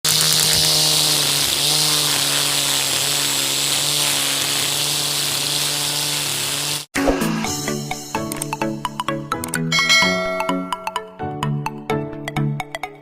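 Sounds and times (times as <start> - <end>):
angle grinder running: 0.0 - 6.9.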